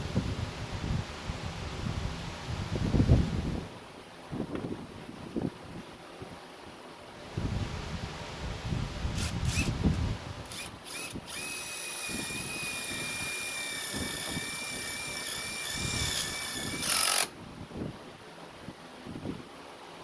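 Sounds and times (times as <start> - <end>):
electric drill whining: 9.2 - 9.8, 10.4 - 17.3.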